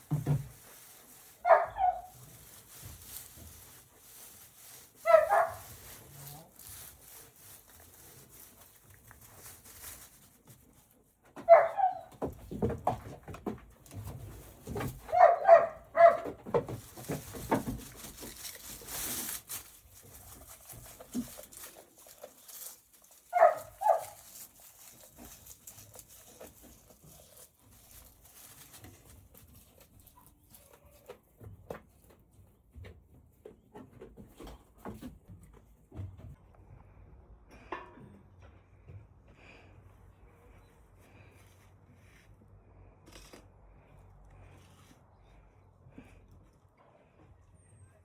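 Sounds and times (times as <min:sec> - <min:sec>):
rustling: 0:00.0 - 0:36.4
dog barking: 0:01.4 - 0:02.1, 0:05.0 - 0:05.7, 0:11.4 - 0:12.1, 0:15.1 - 0:16.4, 0:23.3 - 0:24.2.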